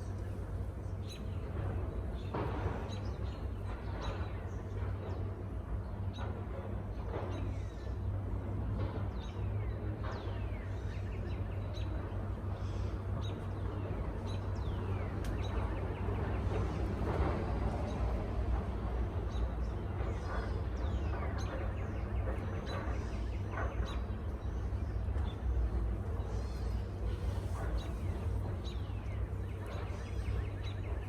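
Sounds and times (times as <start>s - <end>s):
steady low rumble: 0.0s - 31.0s
birds chirping: 17.7s - 31.0s.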